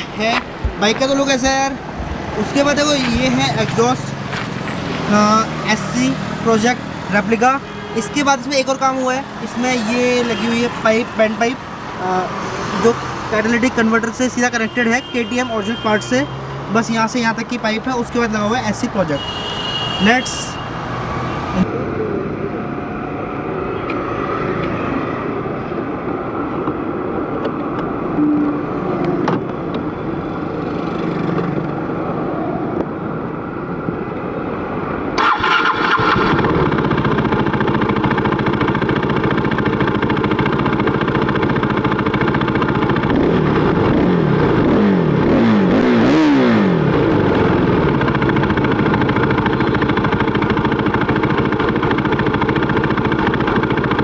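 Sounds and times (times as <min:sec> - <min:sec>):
street noise: 0:00.0 - 0:54.0
motorcycle engine starting and idling: 0:35.2 - 0:44.6, 0:46.2 - 0:54.0.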